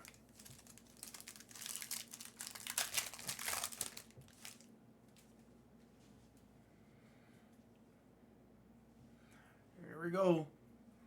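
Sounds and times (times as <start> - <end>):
foil wrapper tearing and crinkling: 0.0 - 4.7.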